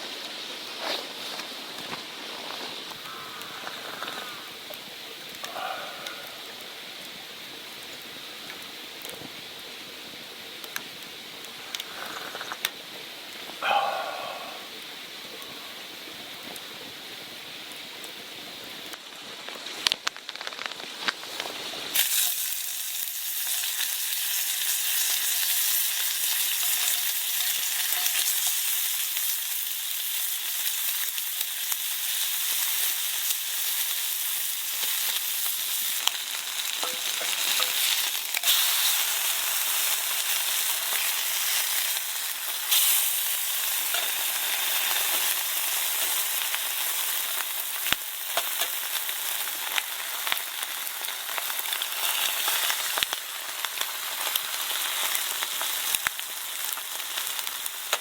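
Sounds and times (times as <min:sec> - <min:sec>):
food sizzling in a pan: 0:00.0 - 0:58.0.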